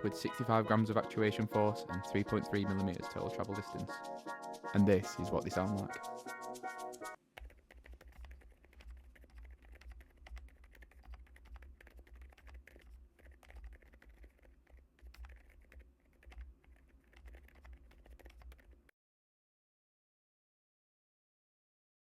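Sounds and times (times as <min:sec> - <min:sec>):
soft damped keyboard keystrokes: 0:07.4 - 0:18.8.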